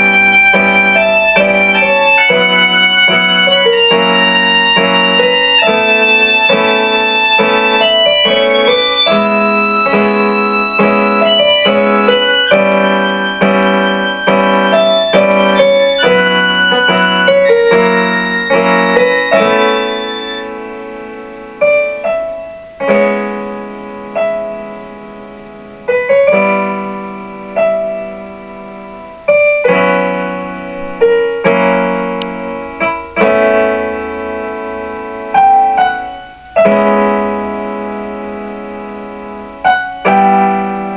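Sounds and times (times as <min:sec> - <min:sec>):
piano music: 0:00.0 - 0:40.9.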